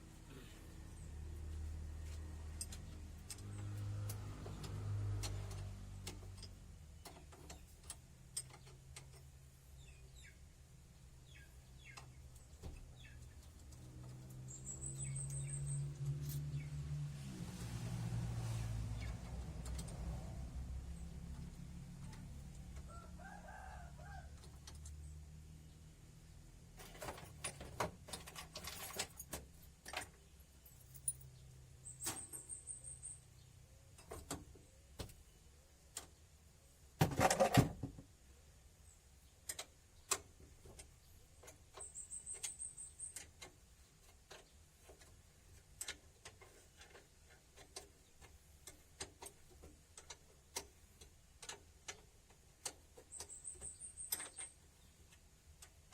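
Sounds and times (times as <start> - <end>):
hand tools and metal parts clinking: 1.4 - 9.9, 11.2 - 16.9, 26.7 - 33.3, 39.4 - 55.9.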